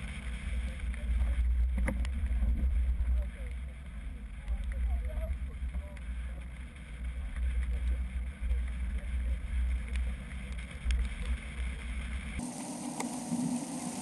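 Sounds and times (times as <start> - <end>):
wind rush and road noise: 0.0 - 14.0.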